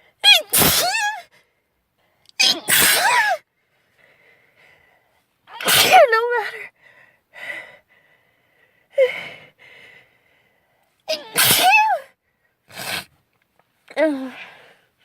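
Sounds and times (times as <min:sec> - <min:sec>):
girl sneezing: 0:00.3 - 0:01.2, 0:02.4 - 0:03.4, 0:05.5 - 0:06.2, 0:11.1 - 0:12.1
gasping breaths: 0:03.6 - 0:05.2, 0:06.7 - 0:11.0.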